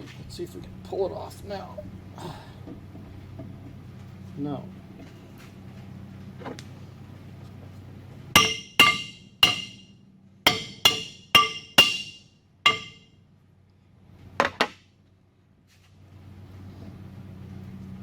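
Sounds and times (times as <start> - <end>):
hammer blows on metal: 8.4 - 9.9, 10.5 - 13.0.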